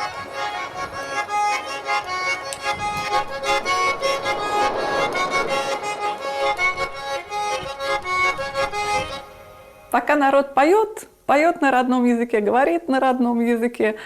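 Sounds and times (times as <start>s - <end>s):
instrumental folk tune: 0.0s - 3.7s, 5.2s - 10.0s.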